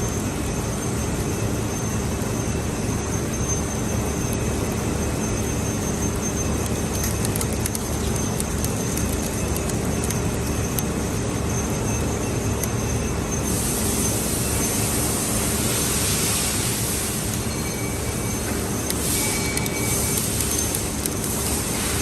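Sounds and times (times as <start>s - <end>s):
machinery hum and rumble: 0.0s - 22.0s
steady machine tones: 0.0s - 22.0s.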